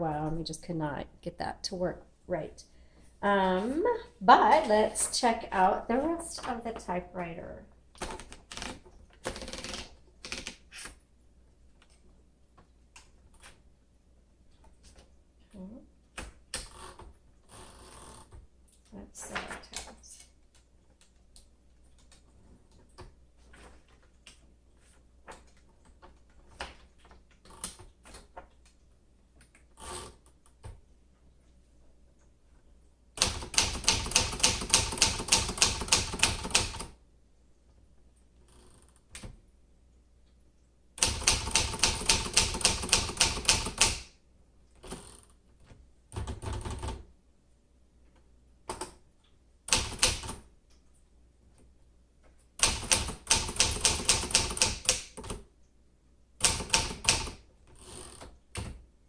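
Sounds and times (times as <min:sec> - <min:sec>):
manual typewriter key strokes: 0:08.0 - 0:11.0, 0:33.2 - 0:36.9, 0:41.0 - 0:44.1, 0:49.7 - 0:50.4, 0:52.6 - 0:55.4, 0:56.4 - 0:57.4.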